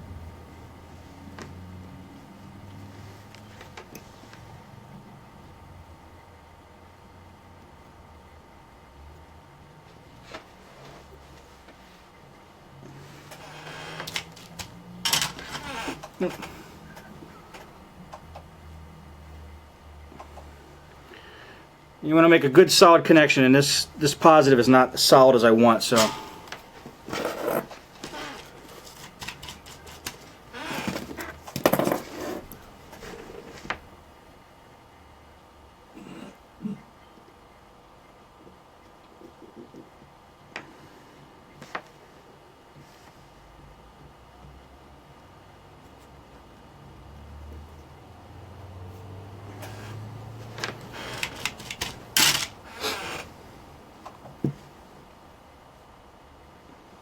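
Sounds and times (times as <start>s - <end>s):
low steady hum: 0.0s - 39.1s
tools and wire clicking and rustling: 13.2s - 18.5s, 25.9s - 33.7s, 49.5s - 54.8s
scraping and rustling: 25.8s - 33.9s, 48.9s - 55.0s.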